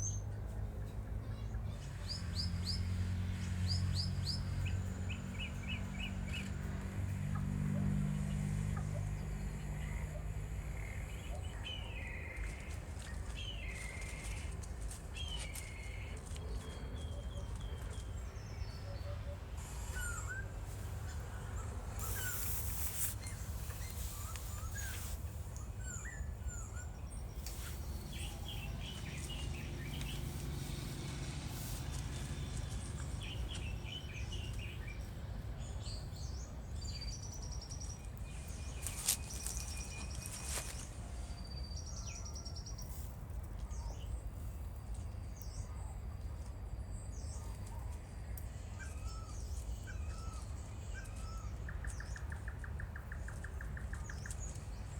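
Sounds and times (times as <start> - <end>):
small birds chirping: 0.0 - 54.9
steady low rumble: 20.5 - 41.2.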